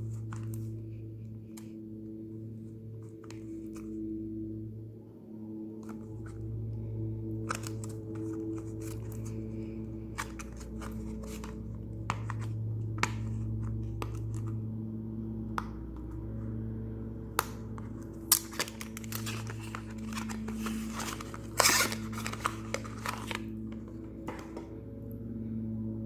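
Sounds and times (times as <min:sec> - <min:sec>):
soft background music: 0:00.0 - 0:26.0
packaging rustling: 0:07.4 - 0:14.5, 0:17.8 - 0:24.7.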